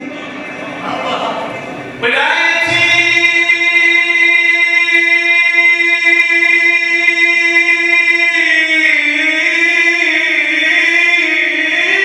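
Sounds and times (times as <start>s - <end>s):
held instrumental note: 0.4s - 4.2s.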